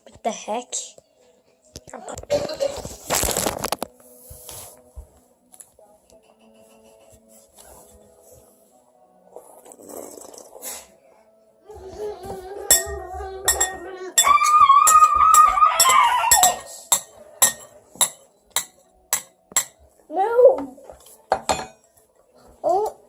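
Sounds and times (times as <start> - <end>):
spoon clinking against bowl: 12.7 - 19.8.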